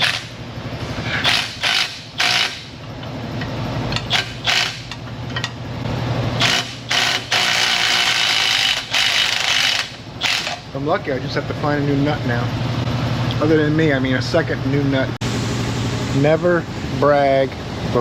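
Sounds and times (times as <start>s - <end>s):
power tool whirring: 1.1s - 2.7s, 4.0s - 5.0s, 6.4s - 10.6s
power tool bursts: 1.2s - 2.7s, 4.1s - 4.9s, 6.4s - 10.6s.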